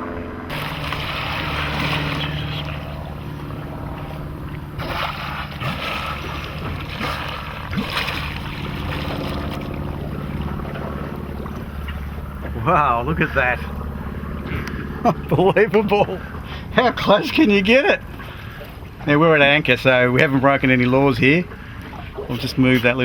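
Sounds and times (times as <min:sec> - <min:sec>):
boat engine humming: 0:00.0 - 0:23.0
wind buffeting microphone: 0:00.5 - 0:15.3
water splashing against hull: 0:00.5 - 0:23.0.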